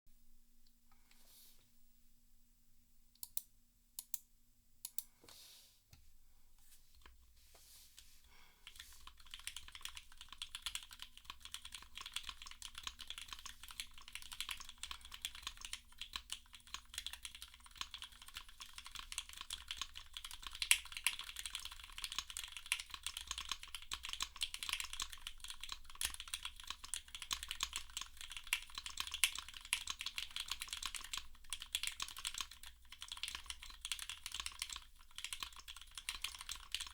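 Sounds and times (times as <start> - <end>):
mechanical keyboard typing: 8.6 - 36.9.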